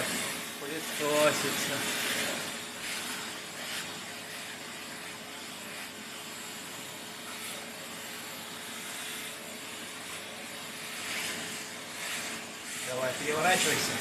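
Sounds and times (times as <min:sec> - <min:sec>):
vacuum cleaner running: 0:00.0 - 0:14.0.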